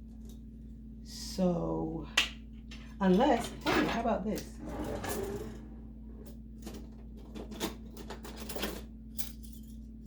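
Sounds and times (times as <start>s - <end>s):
cutlery clinking in a drawer: 6.2s - 9.9s.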